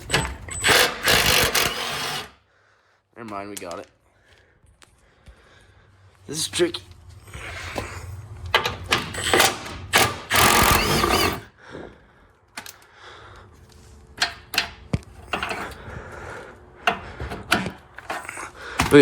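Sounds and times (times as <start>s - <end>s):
hand tools clicking and clanking on metal: 0.0s - 2.3s, 7.6s - 11.9s, 13.6s - 19.0s.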